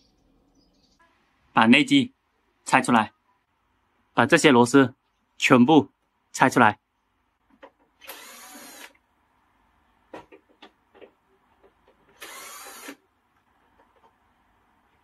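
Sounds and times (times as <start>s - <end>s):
electric screwdriver running: 8.0s - 9.0s, 12.2s - 13.0s.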